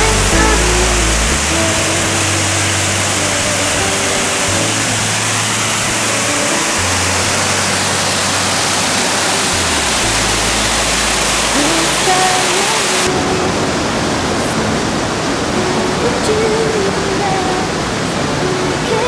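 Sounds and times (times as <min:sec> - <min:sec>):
music playing: 0:00.0 - 0:13.5
waterfall rushing: 0:00.0 - 0:19.0.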